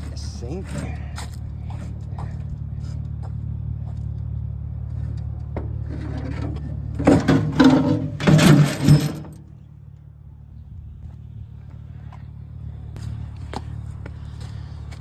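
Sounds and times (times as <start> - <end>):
vehicle engine idling: 0.0 - 15.0
scrap metal clattering: 5.6 - 9.5.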